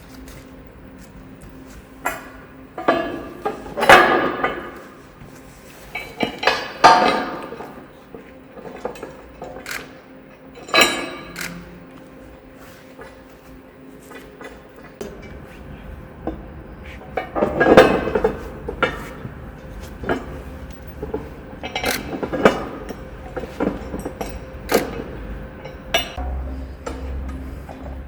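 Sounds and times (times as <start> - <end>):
metal parts and tools clinking: 5.6 - 12.2, 16.8 - 28.0.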